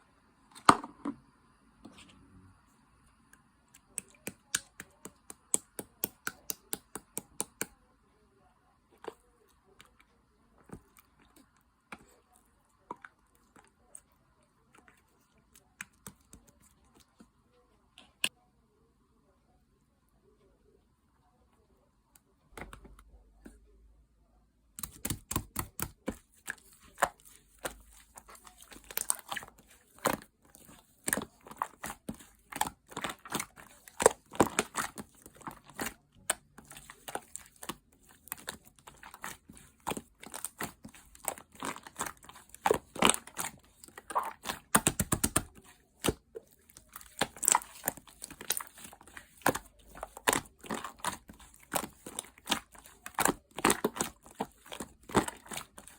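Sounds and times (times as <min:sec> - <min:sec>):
slime squishing and popping: 0:24.8 - 0:55.9.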